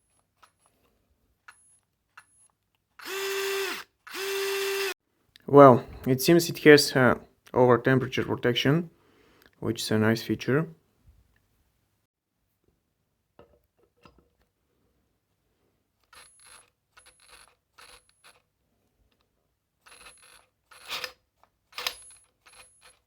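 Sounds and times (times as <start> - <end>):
cordless drill whining: 3.0 - 5.0.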